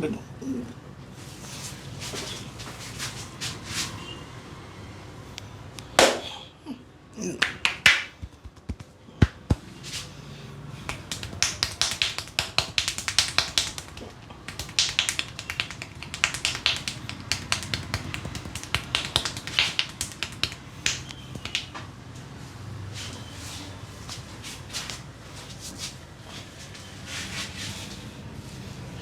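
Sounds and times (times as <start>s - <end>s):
fingers snapping against scalp: 6.0s - 6.3s, 7.4s - 9.6s, 10.9s - 21.8s.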